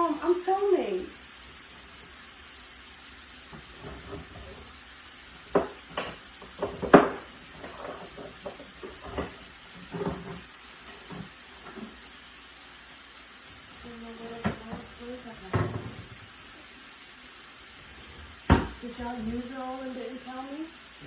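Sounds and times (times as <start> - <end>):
kitchen items clinking and knocking: 5.5 - 12.0, 15.5 - 16.2.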